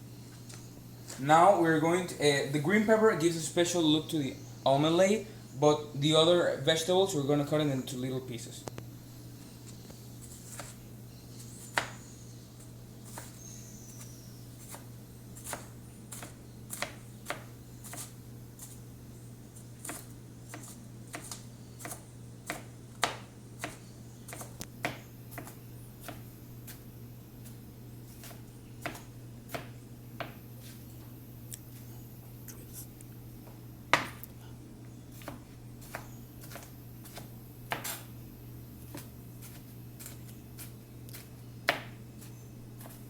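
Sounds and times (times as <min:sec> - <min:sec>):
knife chopping on cutting board: 0:10.4 - 0:10.8, 0:11.7 - 0:12.0, 0:14.6 - 0:18.8, 0:19.8 - 0:26.8, 0:27.4 - 0:30.8, 0:33.9 - 0:34.2, 0:35.2 - 0:38.1, 0:38.9 - 0:42.0.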